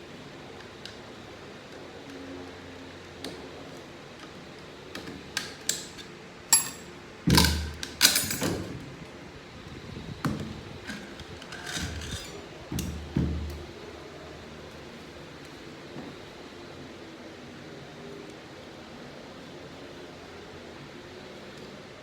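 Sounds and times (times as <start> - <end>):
metal parts clinking: 5.7 - 8.7, 10.9 - 12.4
metal parts rattling: 6.5 - 8.7, 10.8 - 12.5.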